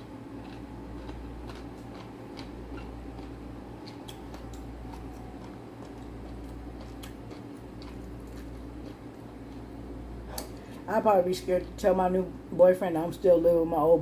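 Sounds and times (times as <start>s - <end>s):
low hum: 0.0s - 12.6s
chewing mouth noises: 0.4s - 10.6s.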